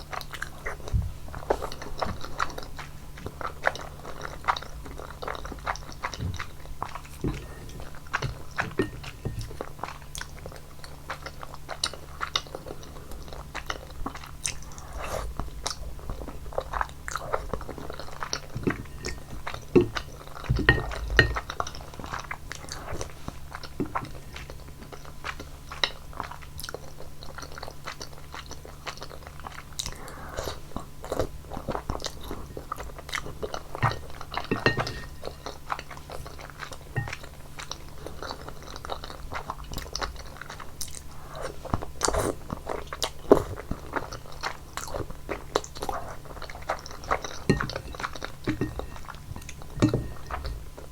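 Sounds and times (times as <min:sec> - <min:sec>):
wet chewing: 0:00.0 - 0:50.9.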